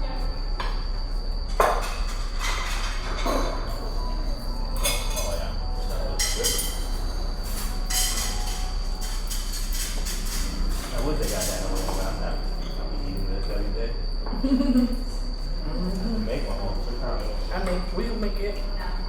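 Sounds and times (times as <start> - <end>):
faint high whine: 0.0 - 19.0
steady low hum: 0.0 - 19.0
cutlery and dishes clinking: 6.1 - 12.0.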